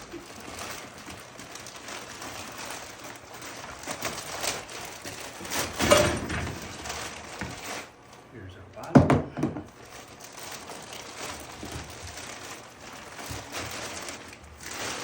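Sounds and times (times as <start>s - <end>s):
cardboard rustling and crackling: 0.0s - 8.0s, 9.2s - 15.0s
cardboard crunch: 9.8s - 15.0s.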